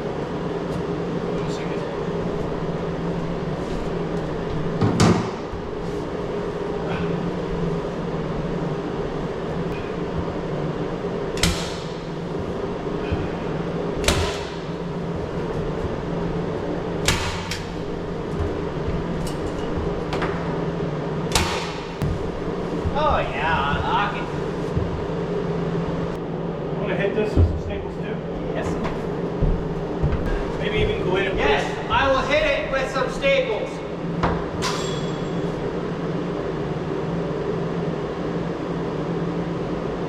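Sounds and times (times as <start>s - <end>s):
steady hum: 0.0s - 40.0s.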